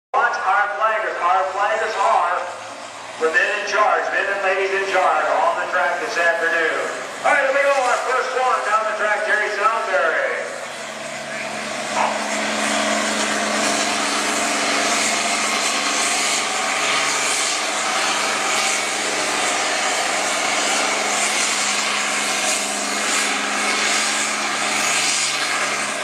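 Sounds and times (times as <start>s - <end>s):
tractor engine at full throttle: 0.2s - 26.0s.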